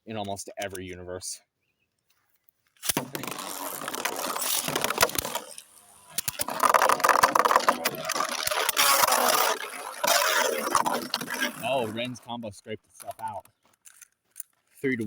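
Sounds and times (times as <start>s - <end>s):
top tip scraping on floor: 2.9s - 12.1s.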